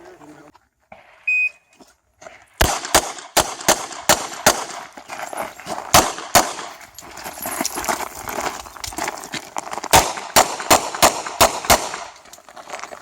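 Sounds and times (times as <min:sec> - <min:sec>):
revolver gunshots: 0:02.6 - 0:04.9, 0:05.9 - 0:06.8, 0:09.9 - 0:12.2.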